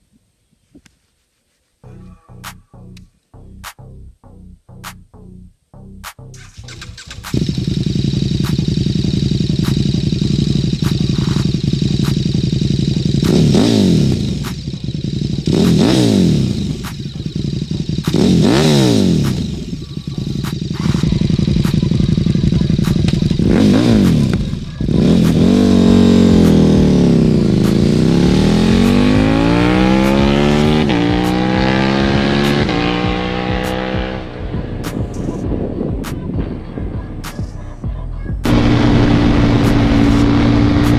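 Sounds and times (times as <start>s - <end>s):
motorcycle engine idling and revving: 6.0s - 40.9s.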